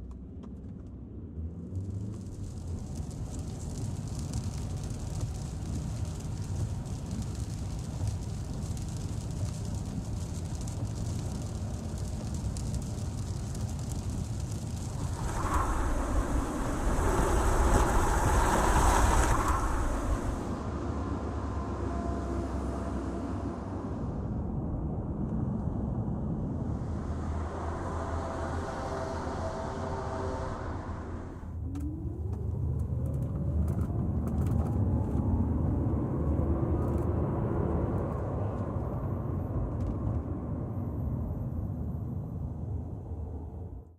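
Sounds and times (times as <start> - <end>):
road noise: 0.0 - 43.8
heavy low rumble: 0.0 - 43.9
car engine: 14.8 - 24.3, 26.7 - 33.8.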